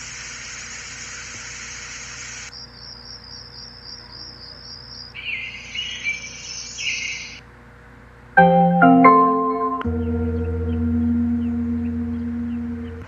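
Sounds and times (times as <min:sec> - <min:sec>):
water-like hiss: 0:00.0 - 0:02.5
crickets chirping: 0:00.3 - 0:07.4.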